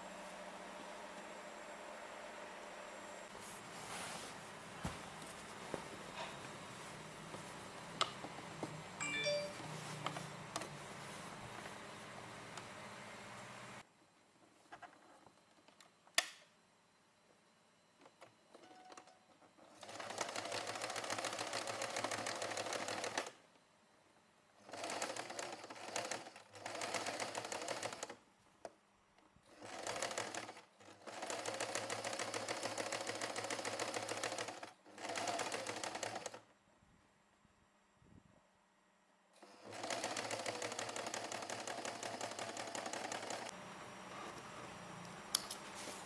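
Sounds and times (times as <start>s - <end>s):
sewing machine stitching: 19.6s - 23.4s, 24.6s - 28.2s, 29.5s - 36.4s, 39.4s - 43.5s.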